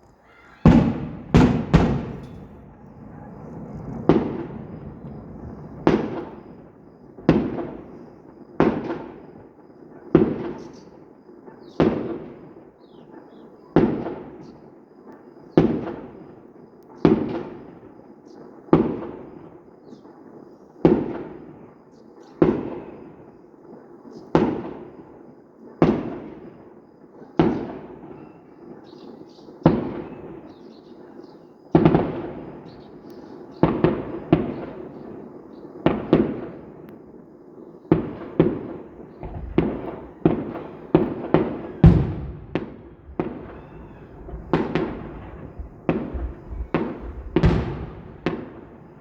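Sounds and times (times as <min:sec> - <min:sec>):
fireworks banging: 0:00.0 - 0:09.3, 0:31.8 - 0:37.2, 0:37.9 - 0:49.0.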